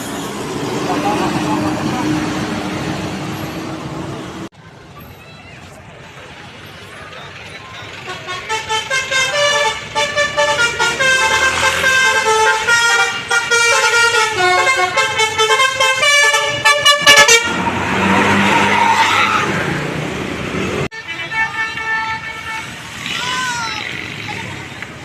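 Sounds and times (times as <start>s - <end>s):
musical bus horn melody: 8.0s - 17.8s, 20.9s - 22.8s.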